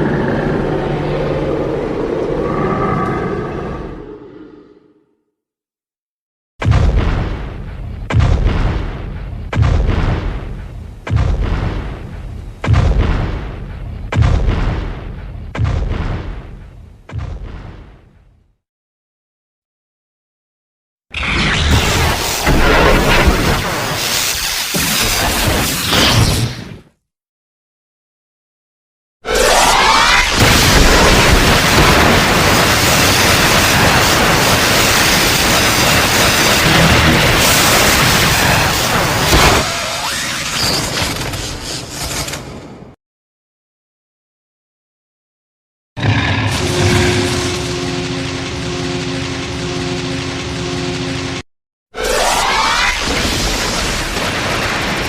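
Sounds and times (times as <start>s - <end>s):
hissing rumble monster effect: 0.0s - 5.0s, 29.7s - 40.0s, 46.0s - 51.4s
heavy booming monster impacts: 6.6s - 18.4s, 46.0s - 49.4s.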